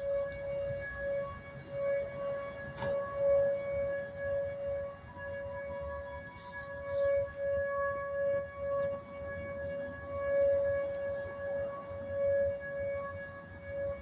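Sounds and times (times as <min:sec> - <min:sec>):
tornado siren steady tone: 0:00.0 - 0:14.0.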